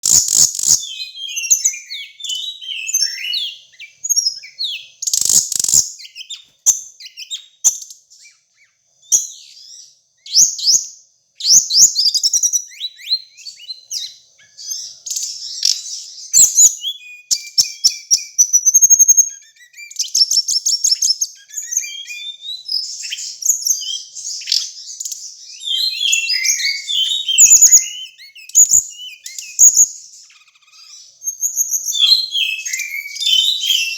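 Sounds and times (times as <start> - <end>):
songbird singing: 0.0 - 33.9.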